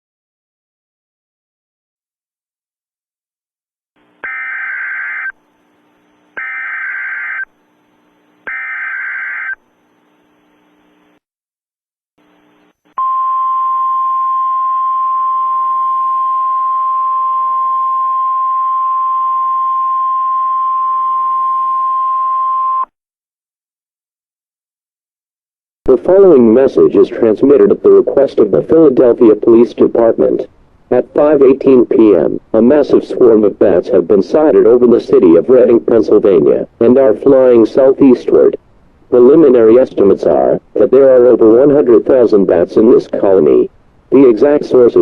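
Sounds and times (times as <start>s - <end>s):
steady attention tone: 4.1s - 11.1s
warbling data tones: 4.2s - 5.4s, 6.4s - 7.5s, 8.5s - 9.6s.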